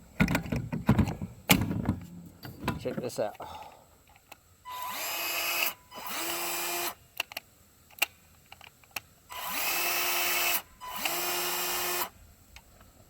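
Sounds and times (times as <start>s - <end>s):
drill motor whining: 4.7s - 7.0s, 9.3s - 12.1s
drill clicks: 9.3s - 12.1s.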